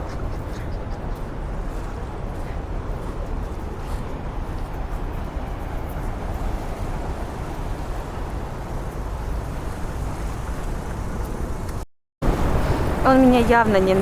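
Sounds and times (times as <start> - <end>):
wind blowing on microphone: 0.0 - 14.0
sea surf washing onto beach: 1.2 - 14.0.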